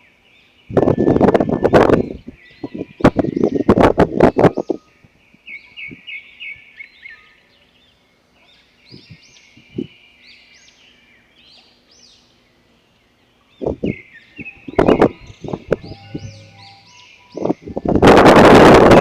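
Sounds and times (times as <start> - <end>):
small birds chirping: 0.0 - 18.2
faint low thumps: 13.6 - 18.0.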